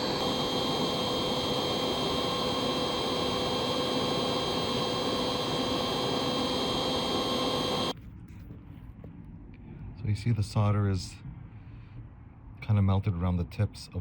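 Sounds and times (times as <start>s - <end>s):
heat gun blowing air: 0.0s - 7.9s
faint steady whine: 0.0s - 8.1s.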